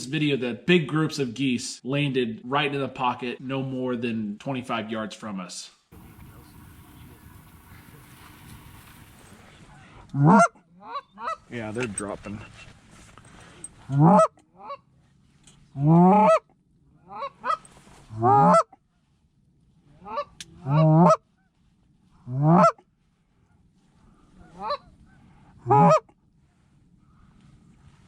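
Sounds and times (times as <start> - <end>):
goose honking: 6.0 - 9.2.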